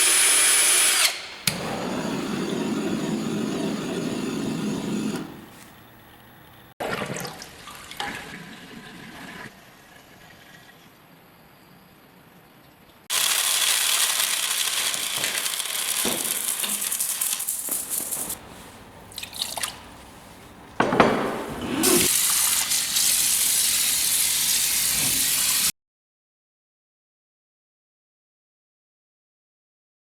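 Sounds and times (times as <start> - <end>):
tap water running into sink: 13.1 - 18.4, 21.9 - 25.7
water splashing: 13.1 - 20.4.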